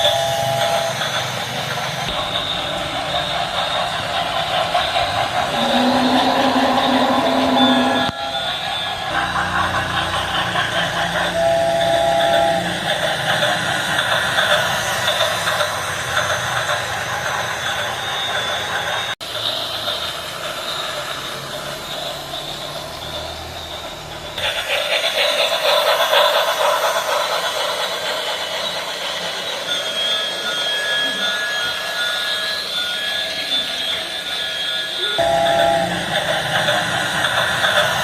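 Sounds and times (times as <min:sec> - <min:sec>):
steady high tones: 0:00.0 - 0:19.2, 0:26.8 - 0:38.0
model train running noise: 0:00.0 - 0:38.0.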